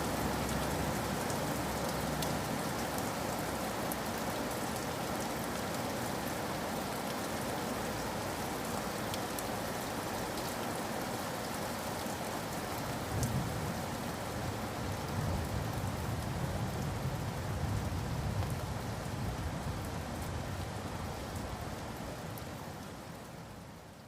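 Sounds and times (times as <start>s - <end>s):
steady rain in a forest: 0.0s - 24.0s
raindrops ticking: 0.4s - 4.5s.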